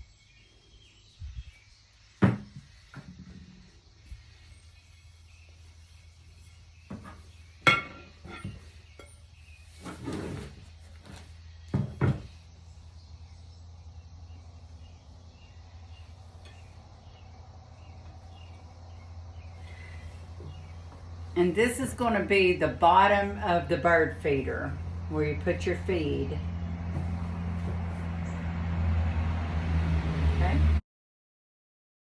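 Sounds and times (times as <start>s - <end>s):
steady low hum: 12.3s - 30.5s.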